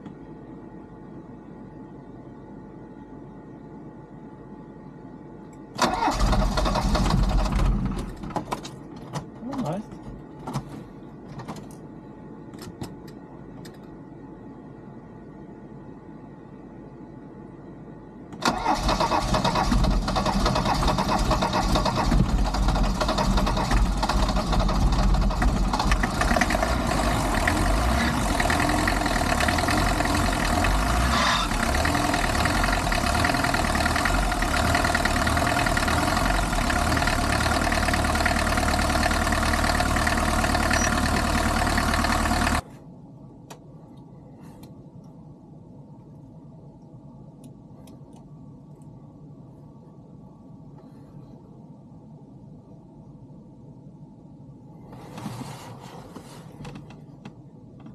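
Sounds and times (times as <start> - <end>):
diesel engine starting and running: 5.7 - 8.4, 18.4 - 42.6.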